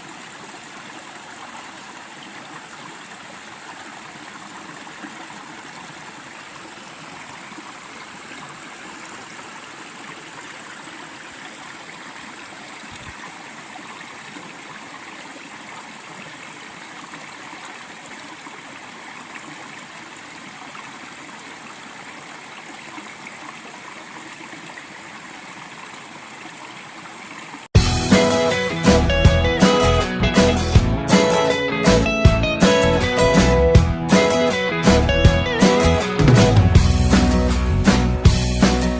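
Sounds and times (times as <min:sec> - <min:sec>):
mountain stream flowing: 0:00.0 - 0:29.0.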